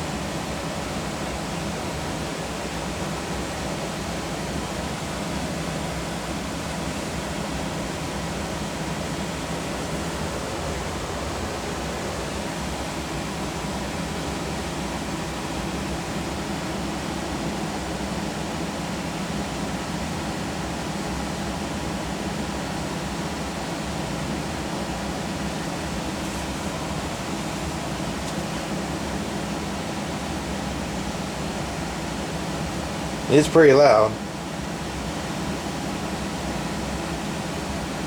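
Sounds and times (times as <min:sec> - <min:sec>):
furnace blower air rush: 0:23.6 - 0:31.2.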